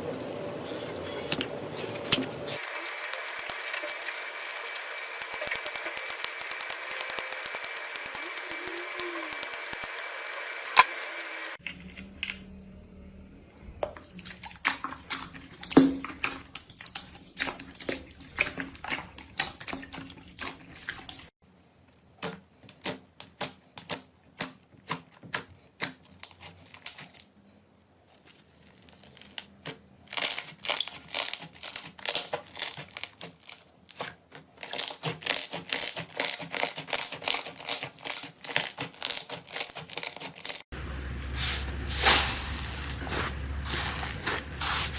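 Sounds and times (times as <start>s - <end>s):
slime squeezed by hand: 41.4s - 44.9s.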